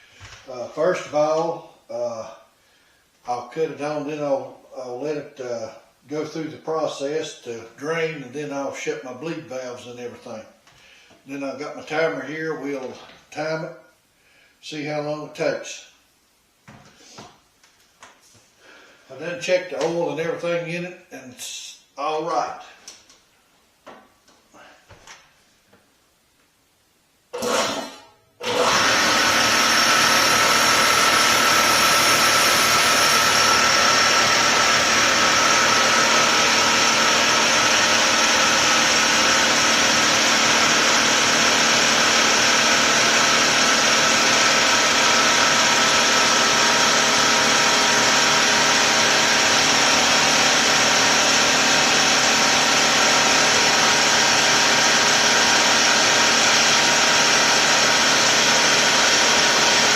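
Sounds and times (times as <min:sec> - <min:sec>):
faint high hiss: 0:00.0 - 0:28.3
air compressor drone and whine: 0:27.4 - 0:59.9.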